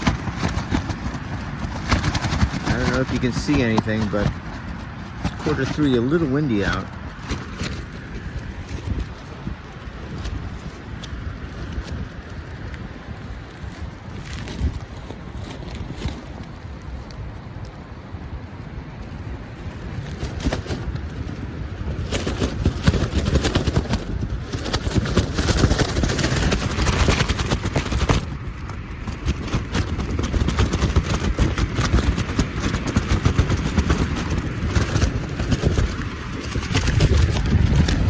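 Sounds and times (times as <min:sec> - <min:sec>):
strong wind on microphone: 0:00.0 - 0:38.0.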